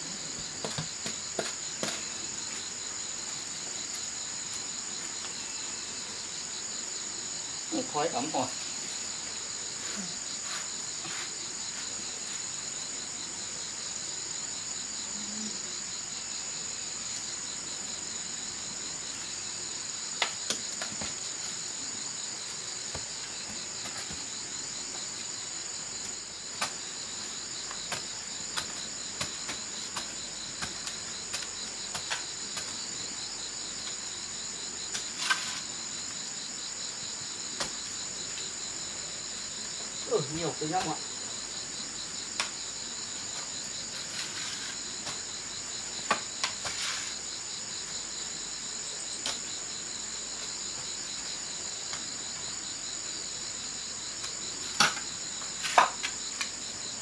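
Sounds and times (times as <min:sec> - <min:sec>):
insects chorus shrilling: 0:37.8 - 0:44.8.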